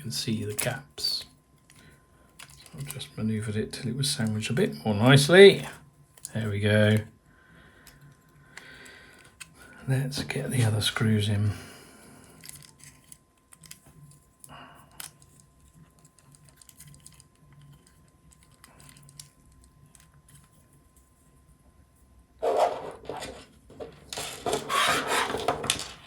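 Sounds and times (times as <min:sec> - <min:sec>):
small clicks and scrapes: 0:00.5 - 0:03.0, 0:07.8 - 0:09.6, 0:12.2 - 0:21.4, 0:22.4 - 0:26.0
plastic parts rubbing and scraping: 0:01.7 - 0:03.0, 0:12.4 - 0:14.4, 0:15.0 - 0:21.2, 0:22.4 - 0:26.0.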